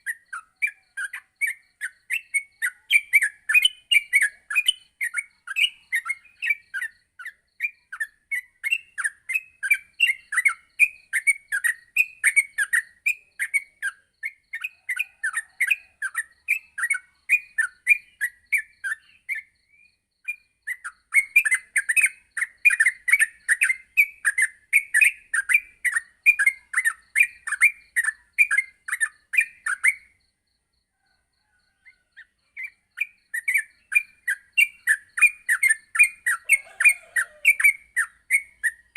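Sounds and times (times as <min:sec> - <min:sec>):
bird singing chirping notes: 0:32.2 - 0:38.9.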